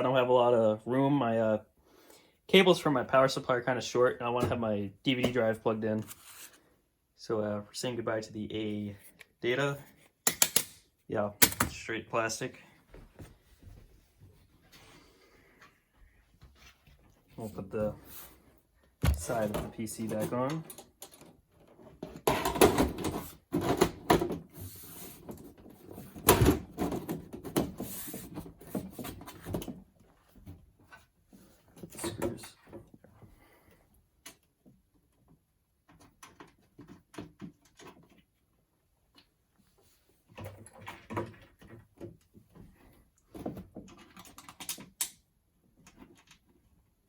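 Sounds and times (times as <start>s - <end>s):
dull thumps: 19.0s - 19.8s
clicking and clattering of computer case: 19.0s - 24.6s, 25.3s - 29.9s, 43.2s - 45.2s.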